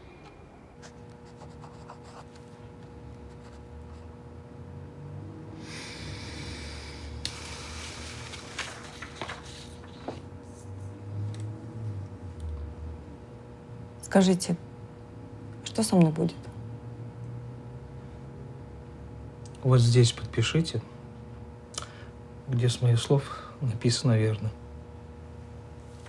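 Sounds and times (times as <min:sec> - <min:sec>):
electrical hum: 0:00.0 - 0:26.0
pen scratching on paper: 0:01.2 - 0:02.3.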